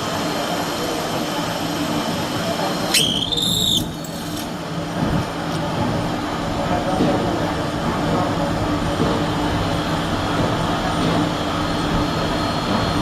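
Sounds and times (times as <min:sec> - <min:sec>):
machinery humming: 0:00.0 - 0:13.0
high whistle-like squeal: 0:02.9 - 0:04.1.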